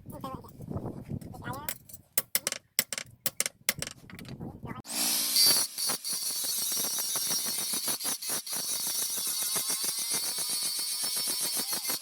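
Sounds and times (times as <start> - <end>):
grinder cutting steel: 4.9 - 12.0.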